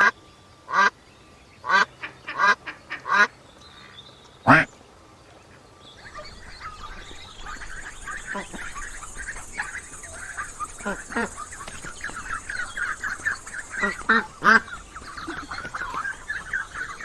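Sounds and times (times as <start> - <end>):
duck quacking: 4.5 - 4.7, 6.0 - 17.0.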